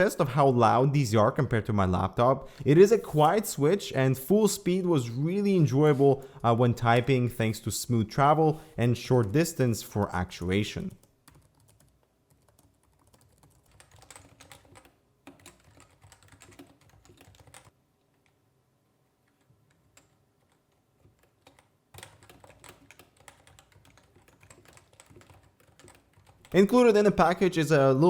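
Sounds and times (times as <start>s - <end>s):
fast typing on keyboard: 10.8s - 18.4s, 19.3s - 27.1s.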